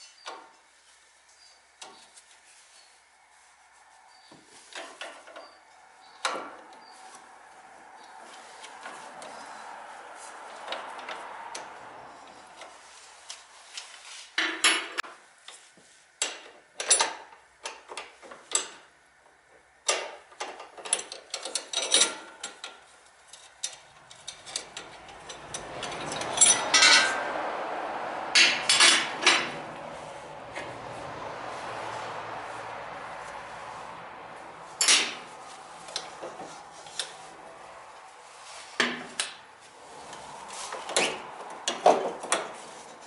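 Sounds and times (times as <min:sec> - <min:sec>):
metal tools clanking: 0:20.6 - 0:27.6, 0:28.4 - 0:29.9, 0:34.8 - 0:37.3.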